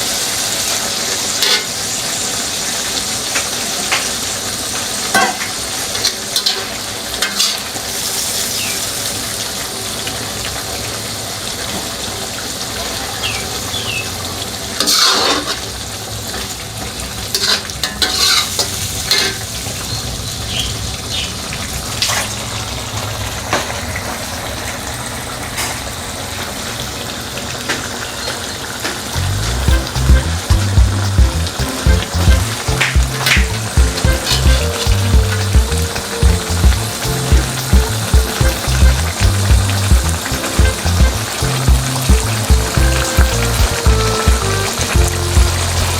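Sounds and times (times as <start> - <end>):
chicken sizzling in a pan: 0.0 - 22.5, 23.3 - 45.9.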